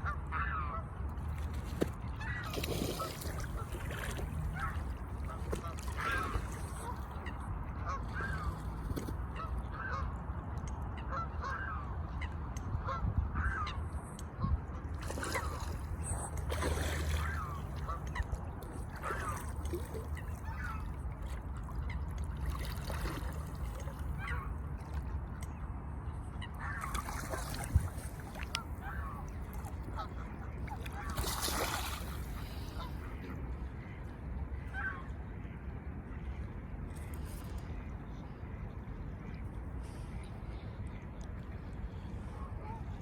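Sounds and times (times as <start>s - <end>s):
swan honking: 15.3s - 21.1s.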